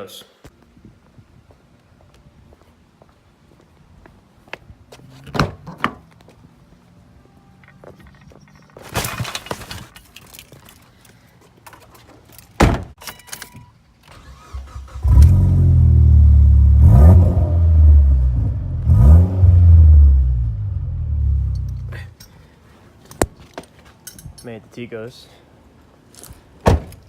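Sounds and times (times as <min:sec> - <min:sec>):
keys jingling: 0:07.6 - 0:09.3
rustling: 0:07.7 - 0:12.6
thump: 0:12.6 - 0:12.9, 0:26.6 - 0:27.0
car engine starting and revving: 0:14.1 - 0:21.8.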